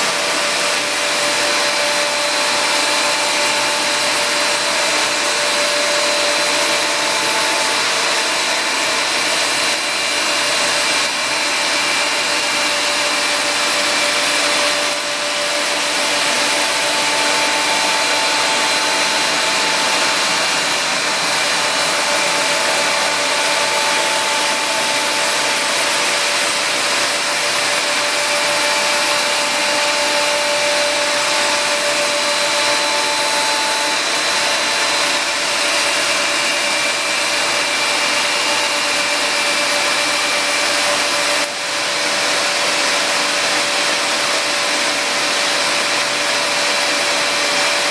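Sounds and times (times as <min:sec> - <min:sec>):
vacuum rushing air: 0:12.5 - 0:37.2.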